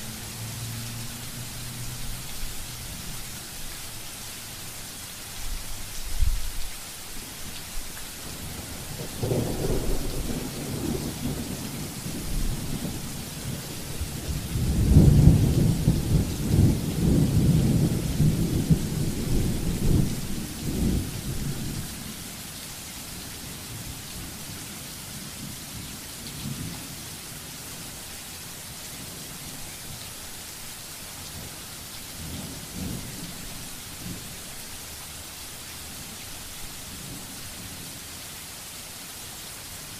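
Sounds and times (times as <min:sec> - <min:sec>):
steady rain: 0:00.0 - 0:39.9
thunder rumbling: 0:08.3 - 0:21.9.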